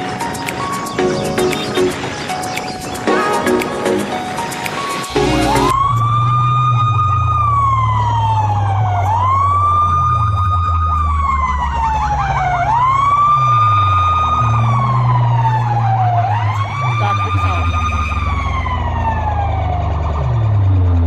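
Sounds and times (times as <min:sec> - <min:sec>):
music: 0:00.0 - 0:05.7
heavy pulsing bass: 0:00.8 - 0:10.5
siren wail: 0:03.1 - 0:21.0.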